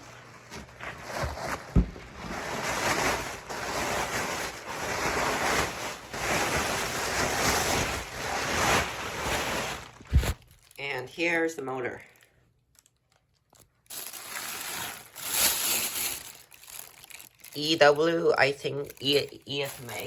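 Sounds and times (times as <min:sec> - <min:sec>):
styrofoam and cardboard rustling: 0:00.0 - 0:10.8, 0:13.9 - 0:18.0, 0:18.9 - 0:20.0
thump: 0:01.7 - 0:02.1.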